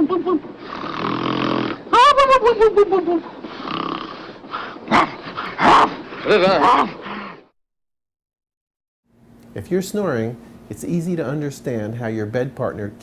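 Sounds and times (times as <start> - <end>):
person snoring loudly: 0.6 - 1.9, 3.5 - 5.1.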